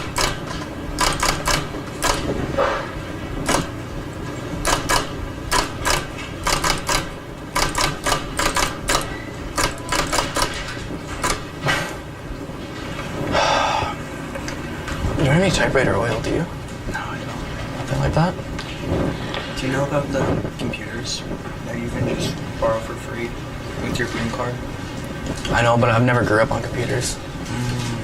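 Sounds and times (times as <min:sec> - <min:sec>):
typewriter keys clacking: 0:00.0 - 0:02.3, 0:03.5 - 0:03.7, 0:04.6 - 0:11.4.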